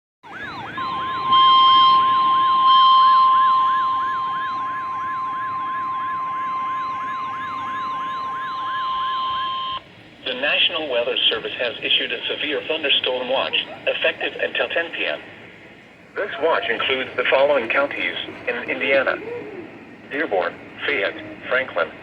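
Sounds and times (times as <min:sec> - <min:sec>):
siren-like sweeping tone: 0:00.2 - 0:09.8
steady alarm tone: 0:00.2 - 0:13.4.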